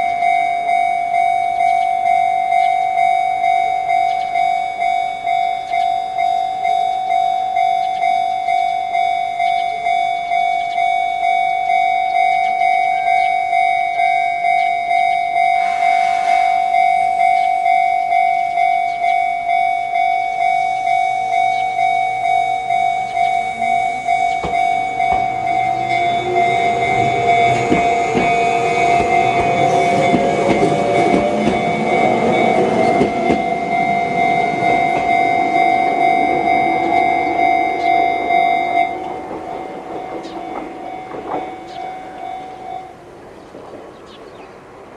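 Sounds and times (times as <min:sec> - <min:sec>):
level crossing warning bell: 0:00.0 - 0:44.2
train whine: 0:00.0 - 0:44.9
wheels clicking over rail joints: 0:17.7 - 0:44.1.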